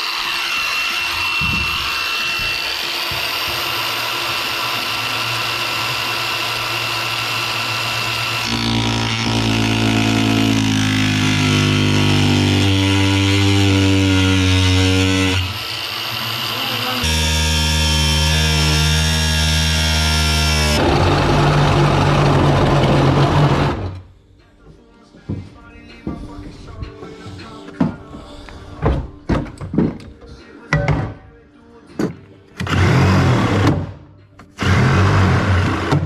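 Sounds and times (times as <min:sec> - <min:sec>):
power saw whining: 0:00.0 - 0:24.1, 0:32.6 - 0:33.8, 0:34.4 - 0:36.0.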